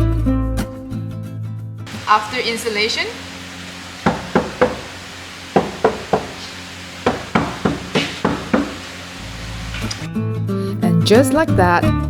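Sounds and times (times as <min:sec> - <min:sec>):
knocking on car door panel: 0:04.0 - 0:08.9.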